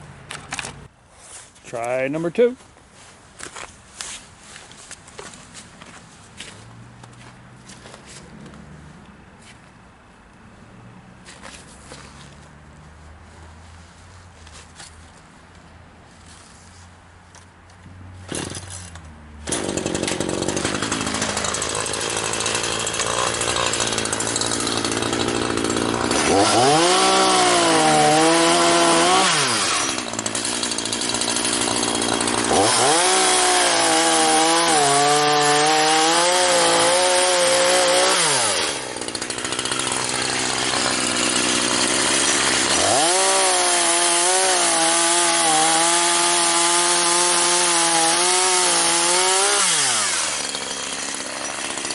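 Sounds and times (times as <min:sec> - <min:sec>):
sawmill engine and saw running: 0:19.4 - 0:51.9.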